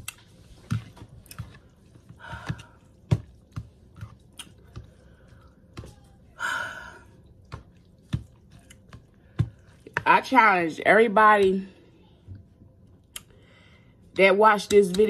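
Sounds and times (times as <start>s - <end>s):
wet chewing and mouth smacks: 0.0s - 5.8s, 7.2s - 9.9s.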